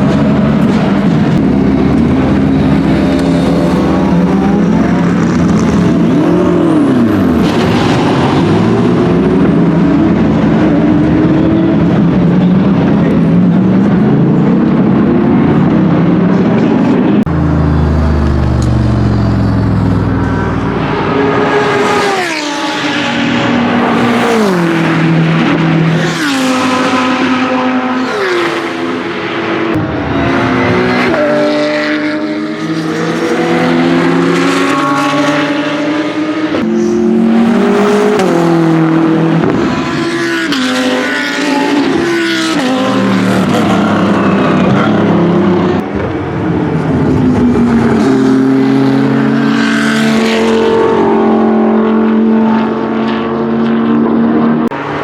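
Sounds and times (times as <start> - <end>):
other race car engines: 0.0 - 55.0
race car engine downshifting: 0.0 - 55.0.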